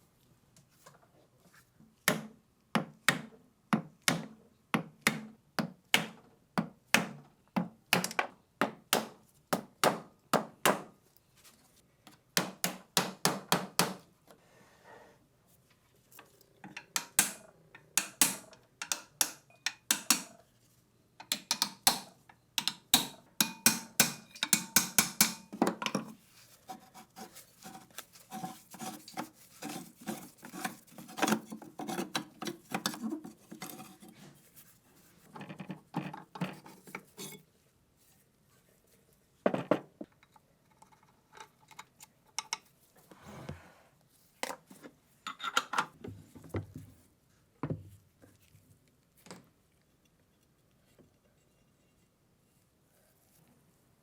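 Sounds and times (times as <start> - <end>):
hand tools tapping metal: 16.6 - 20.4, 21.2 - 26.8, 27.6 - 34.2
scraping and rubbing: 26.1 - 35.3.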